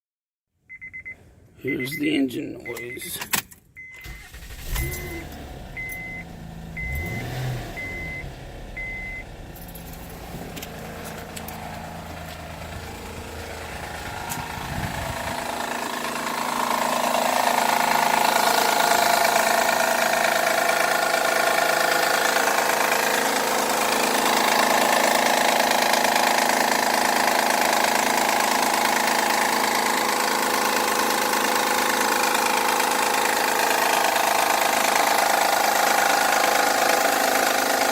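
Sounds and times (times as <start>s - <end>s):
short beeps: 0.7s - 3.2s, 4.8s - 9.3s
car engine running loudly: 4.4s - 37.9s.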